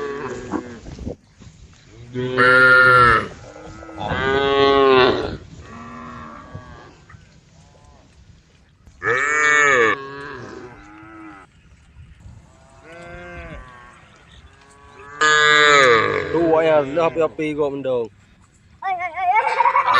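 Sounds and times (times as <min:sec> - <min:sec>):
cows mooing: 0:00.0 - 0:00.8, 0:02.1 - 0:08.1, 0:09.0 - 0:11.5, 0:12.4 - 0:17.4.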